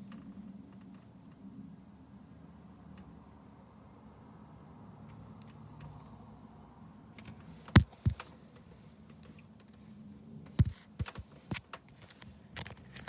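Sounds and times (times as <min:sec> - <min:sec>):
sharp knocks and clicks: 0:07.7 - 0:08.3, 0:10.5 - 0:11.9.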